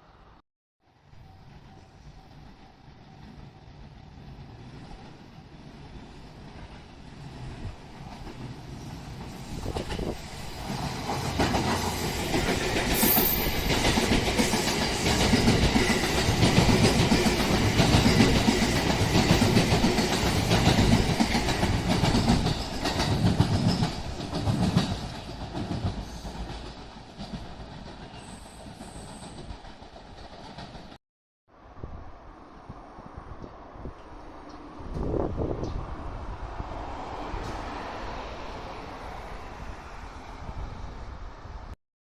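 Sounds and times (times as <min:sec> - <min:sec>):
electric train running past: 0:00.9 - 0:30.9, 0:31.7 - 0:41.8
train wheels clacking on rails: 0:08.0 - 0:31.0.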